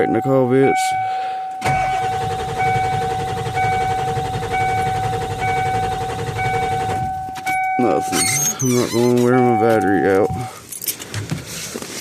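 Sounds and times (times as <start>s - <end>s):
dashboard warning chime beeping: 0.0s - 10.6s
diesel engine cranking: 1.6s - 7.2s.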